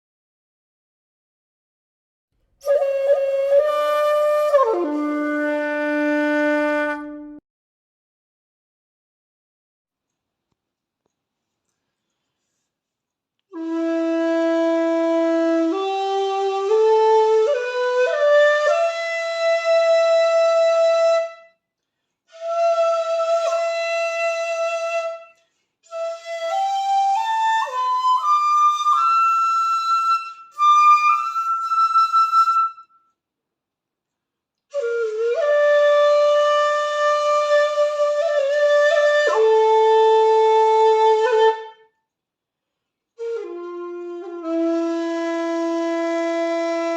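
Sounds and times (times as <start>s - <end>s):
bamboo flute playing: 2.6s - 7.4s, 13.5s - 21.6s, 22.3s - 33.1s, 34.7s - 42.0s, 43.2s - 46.9s.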